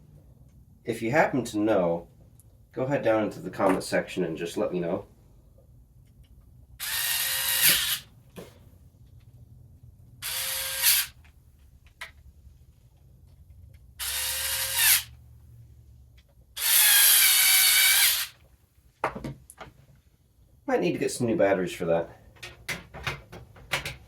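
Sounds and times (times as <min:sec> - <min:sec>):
electric screwdriver whining: 0:06.8 - 0:08.1, 0:10.2 - 0:11.2, 0:14.0 - 0:15.1, 0:16.6 - 0:18.4.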